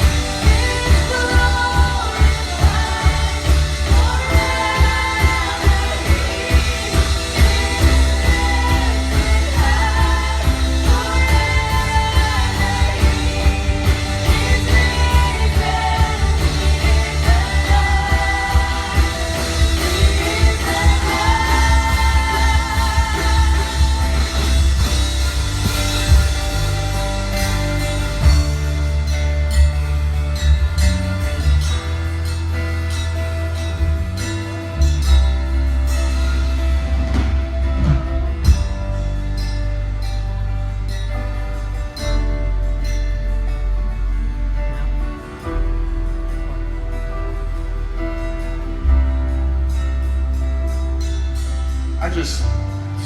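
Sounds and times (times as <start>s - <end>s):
person singing: 0.0s - 25.2s
worship band playing: 0.0s - 53.0s.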